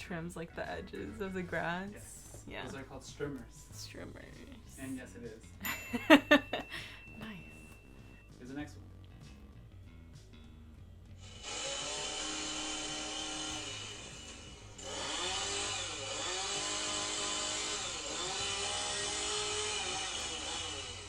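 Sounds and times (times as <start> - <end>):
chainsaw engine revving: 11.2 - 21.0.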